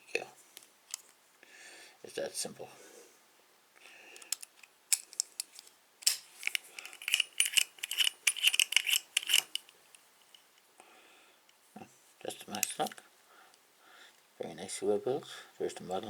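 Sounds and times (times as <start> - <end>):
padlock dial clicking: 4.2 - 9.7.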